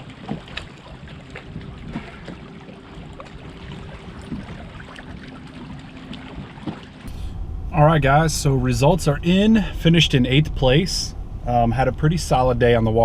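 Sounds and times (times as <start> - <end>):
knocks and clicks against hull: 0.0 - 7.2
faint steady hum: 0.0 - 13.0
water lapping around kayak: 0.0 - 13.0.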